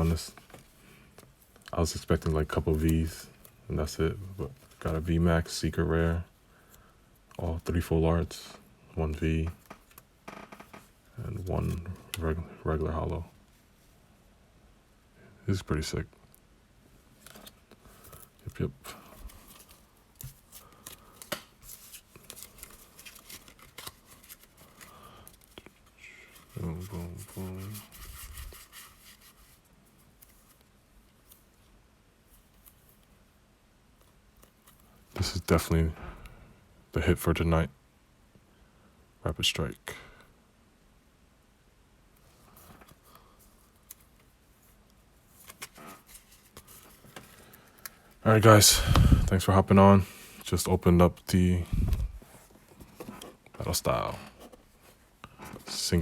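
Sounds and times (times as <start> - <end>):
soft rustling: 17.0 - 33.2, 42.2 - 49.4, 50.3 - 56.0
trading cards being handled: 17.1 - 31.6, 42.3 - 48.2, 50.4 - 56.0.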